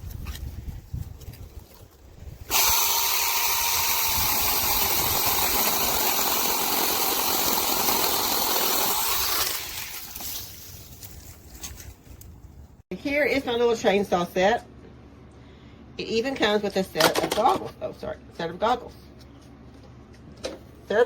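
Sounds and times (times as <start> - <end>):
electric chainsaw running: 2.5 - 10.3.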